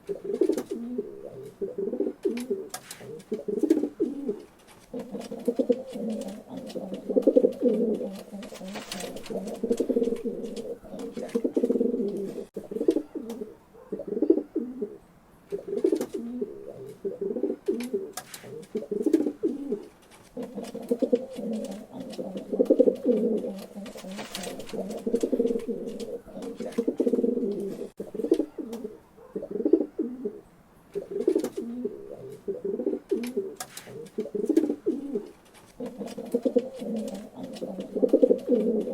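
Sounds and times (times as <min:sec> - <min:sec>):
pigeons cooing: 0:00.0 - 0:38.9
wing flutters: 0:02.7 - 0:12.5, 0:18.2 - 0:27.9.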